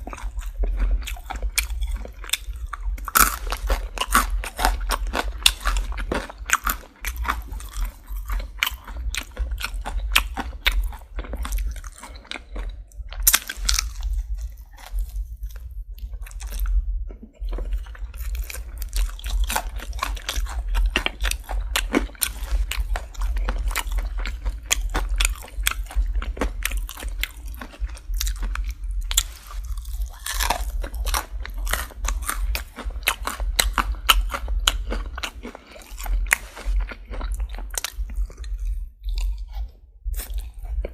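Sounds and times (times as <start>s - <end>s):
chewing crunchy fried chicken: 0.0s - 40.9s
steady low hum: 0.0s - 40.9s.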